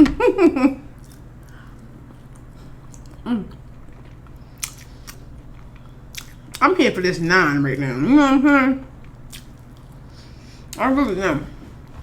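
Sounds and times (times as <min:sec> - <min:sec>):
person chewing food: 0:00.9 - 0:06.6, 0:09.0 - 0:10.8
person humming mm: 0:03.2 - 0:03.6.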